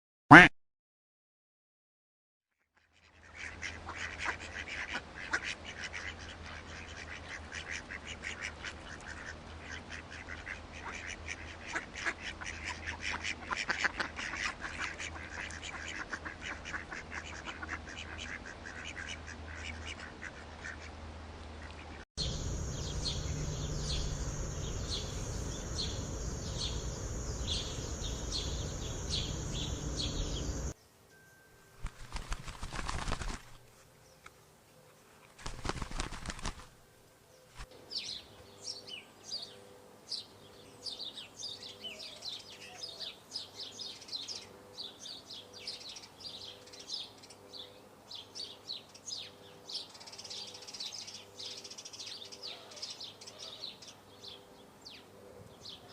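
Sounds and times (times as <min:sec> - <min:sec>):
flock of birds calling: 0:22.2 - 0:30.8
high-pitched repeated bird calls: 0:22.2 - 0:30.8
low hum: 0:22.2 - 0:30.8.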